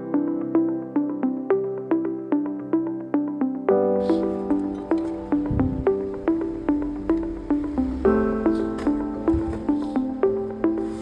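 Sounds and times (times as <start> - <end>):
synthesized plucked melody: 3.7 - 11.0.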